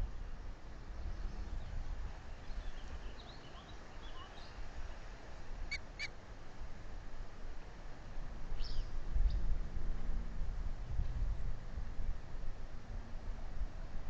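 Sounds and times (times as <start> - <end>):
faint bird twittering: 0.9 - 5.0, 8.6 - 9.4
wind buffeting microphone: 8.6 - 14.0.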